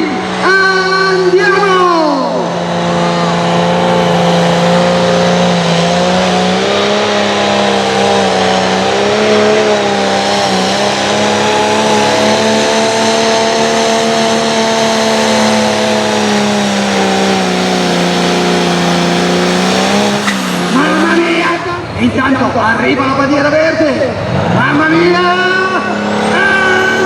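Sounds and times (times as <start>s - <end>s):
tractor engine at full throttle: 0.0s - 27.0s.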